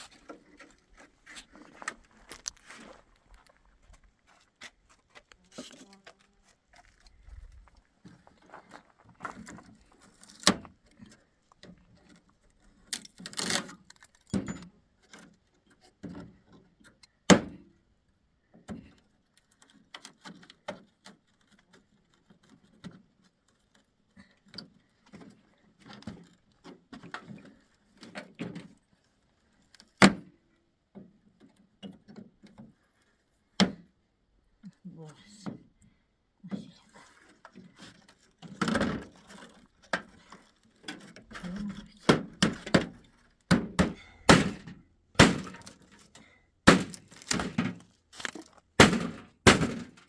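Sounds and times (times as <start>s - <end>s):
clatter of wood and tools: 0.0s - 3.6s, 4.6s - 17.1s, 18.7s - 30.0s, 37.0s - 50.0s
sharp loud knocks: 43.5s - 45.6s, 46.7s - 47.7s, 48.8s - 49.9s.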